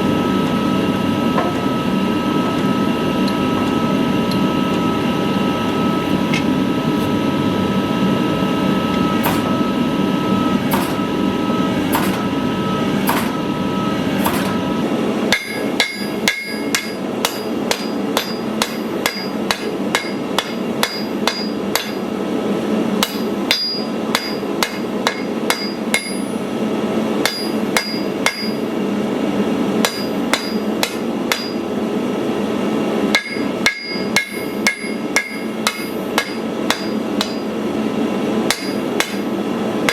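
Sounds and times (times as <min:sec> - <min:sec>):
hammer striking steel: 0:09.1 - 0:09.8, 0:10.7 - 0:11.2, 0:11.9 - 0:12.4, 0:13.0 - 0:13.5, 0:14.2 - 0:14.7, 0:15.3 - 0:22.0, 0:23.0 - 0:26.3, 0:27.2 - 0:28.7, 0:29.8 - 0:31.6, 0:33.1 - 0:37.5, 0:38.5 - 0:39.3.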